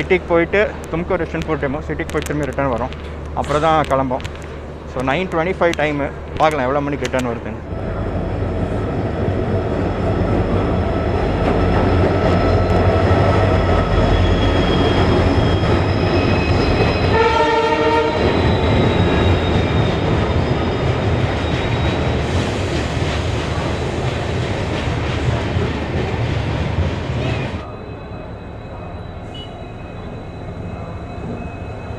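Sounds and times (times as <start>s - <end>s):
train rumbling past: 0.0s - 31.9s
train horn: 17.1s - 18.5s.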